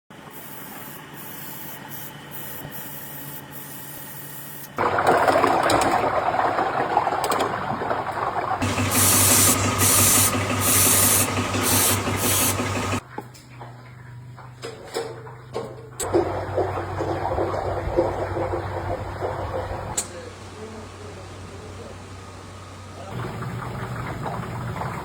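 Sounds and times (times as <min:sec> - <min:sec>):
machine hum with hissing bursts: 0:00.2 - 0:04.8, 0:08.6 - 0:13.0.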